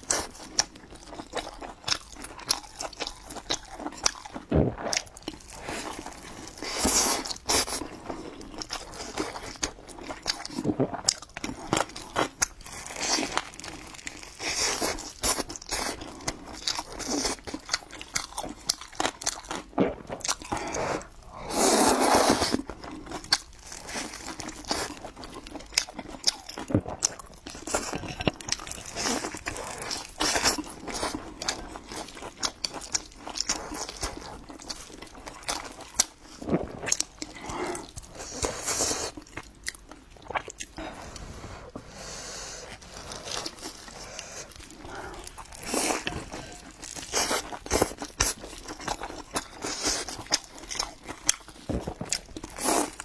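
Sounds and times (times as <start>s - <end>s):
chewing crisp food: 0.0s - 41.3s, 42.6s - 53.0s
wet mouth sounds: 36.4s - 53.0s.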